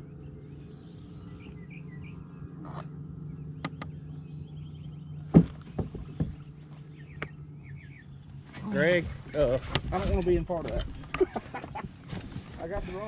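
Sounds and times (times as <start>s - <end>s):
small birds chirping: 0.0s - 13.0s
steady low hum: 0.0s - 13.0s
thumps and knocks against boat: 5.2s - 7.4s.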